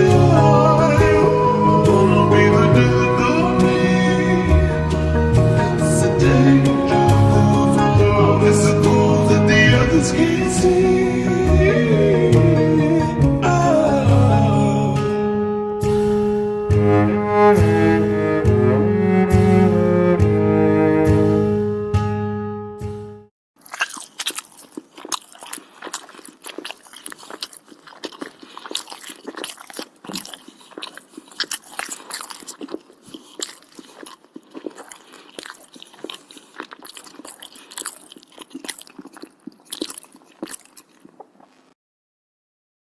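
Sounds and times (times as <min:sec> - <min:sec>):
chewing mouth sounds: 0:00.0 - 0:07.9, 0:23.6 - 0:41.8
cello music: 0:00.2 - 0:15.0, 0:16.2 - 0:22.8.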